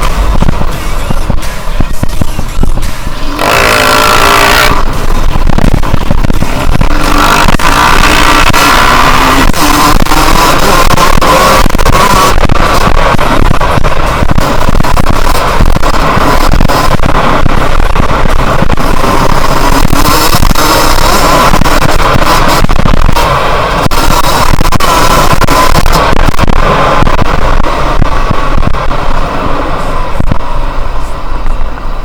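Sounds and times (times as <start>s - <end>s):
two-stroke engine revving: 3.2s - 27.8s.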